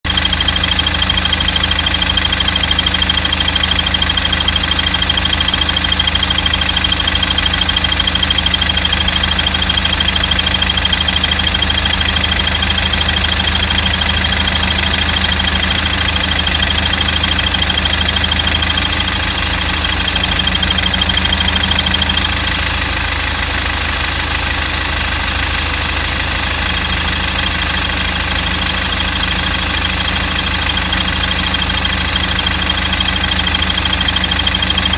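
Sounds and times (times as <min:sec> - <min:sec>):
car engine idling: 0:00.0 - 0:34.9
high-pitched squeal: 0:00.1 - 0:25.6.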